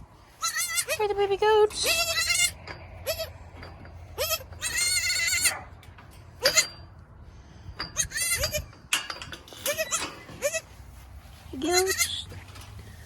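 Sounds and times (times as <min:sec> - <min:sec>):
baby goats bleating: 0:00.4 - 0:01.0, 0:01.7 - 0:03.4, 0:04.2 - 0:05.7, 0:06.4 - 0:06.7, 0:07.9 - 0:08.7, 0:09.7 - 0:10.7, 0:11.7 - 0:12.2.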